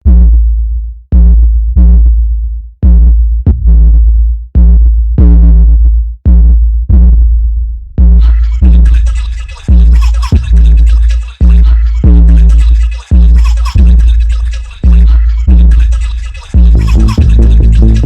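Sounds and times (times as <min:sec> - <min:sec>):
distorted sub-bass hits: 0:00.0 - 0:09.0, 0:09.7 - 0:14.2, 0:14.8 - 0:18.0
electronic trap music: 0:08.0 - 0:18.0
hi-hat and percussion: 0:08.0 - 0:18.0.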